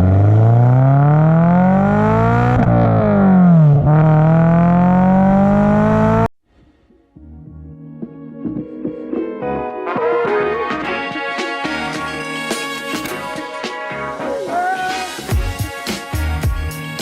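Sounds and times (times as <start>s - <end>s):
car engine revving: 0.0s - 6.3s.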